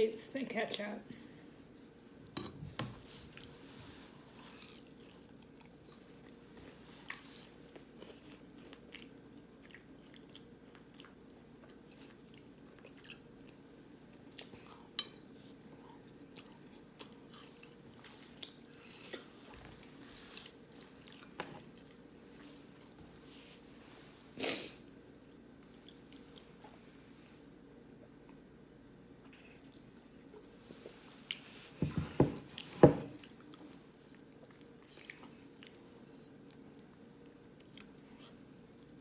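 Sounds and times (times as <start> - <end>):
faint steady hum: 0.0 - 39.0
person chewing food: 3.3 - 23.3, 25.3 - 27.2, 33.1 - 39.0.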